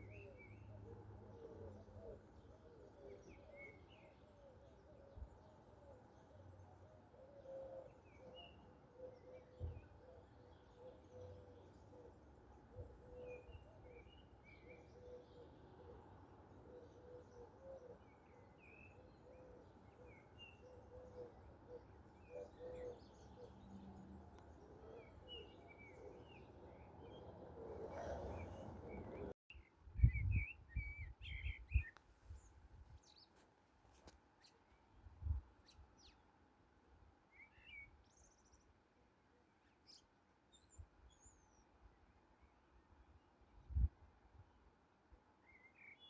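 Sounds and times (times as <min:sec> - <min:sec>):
bird hooting softly: 0:00.0 - 0:23.8, 0:24.7 - 0:29.3
songbirds chirping: 0:00.0 - 0:46.0.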